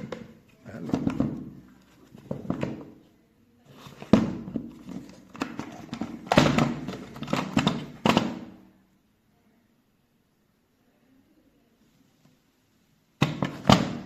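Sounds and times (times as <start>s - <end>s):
hard items knocking and clattering: 0.0s - 3.0s, 3.7s - 8.6s, 13.2s - 14.0s.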